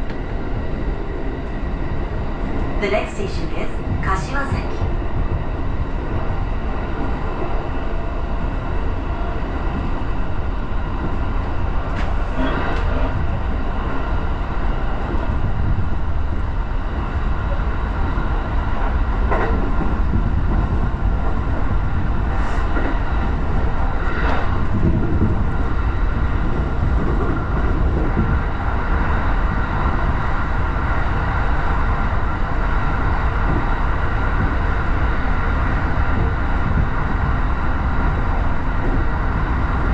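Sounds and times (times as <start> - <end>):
train rumbling on track: 0.0 - 39.9
rail clicks: 9.6 - 13.9.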